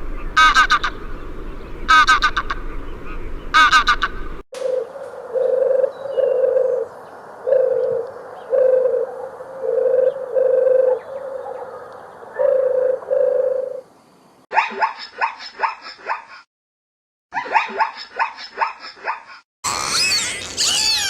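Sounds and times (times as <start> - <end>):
bird cooing: 3.1 - 13.9
animal yelping: 19.7 - 21.0
high bird chirps: 19.7 - 21.0.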